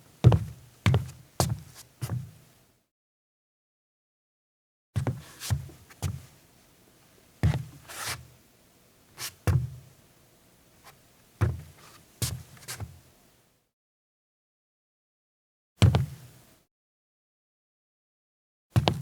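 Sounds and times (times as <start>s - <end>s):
footsteps on a deck: 0.3s - 1.8s.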